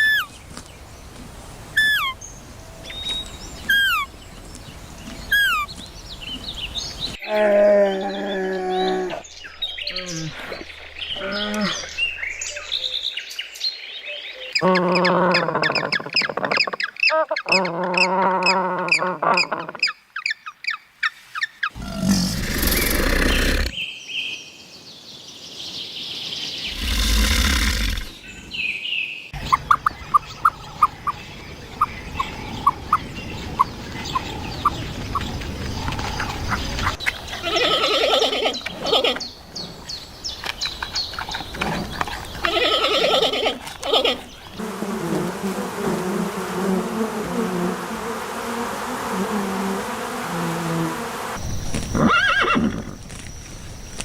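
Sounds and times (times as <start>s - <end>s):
rough animal calls: 14.6s - 20.0s, 21.7s - 23.8s.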